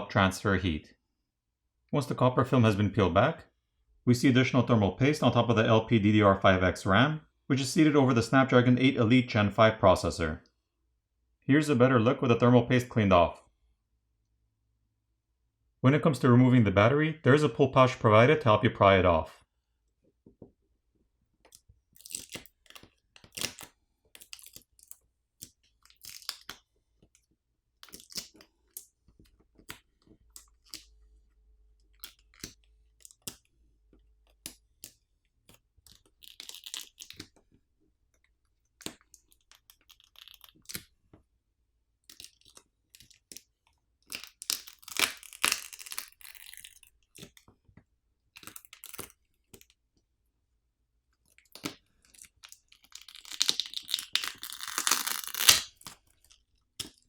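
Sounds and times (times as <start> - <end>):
adhesive crackling and tearing: 21.4 - 27.2, 27.8 - 31.0, 31.8 - 33.6, 34.2 - 37.6, 38.2 - 41.0, 42.0 - 47.6, 48.3 - 49.8, 51.2 - 57.0.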